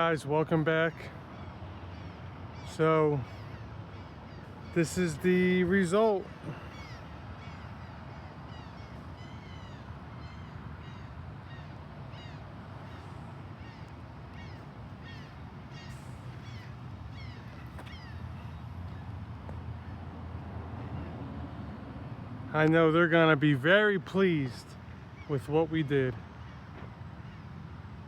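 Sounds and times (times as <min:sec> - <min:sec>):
birds chirping: 0:00.0 - 0:21.2.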